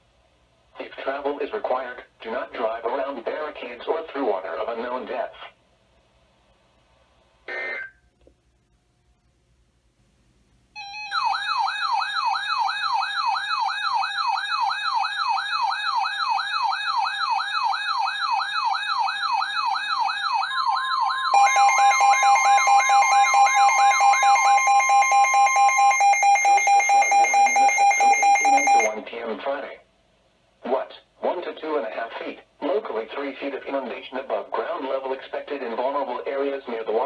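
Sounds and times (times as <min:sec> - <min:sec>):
electronic siren wailing: 0:10.8 - 0:29.0
fast pulsing beep: 0:21.4 - 0:29.0.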